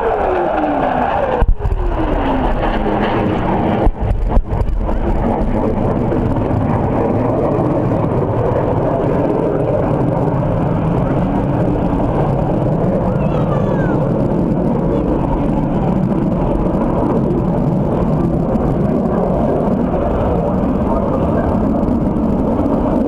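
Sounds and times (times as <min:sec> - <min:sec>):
aircraft flying past: 0:00.0 - 0:23.0.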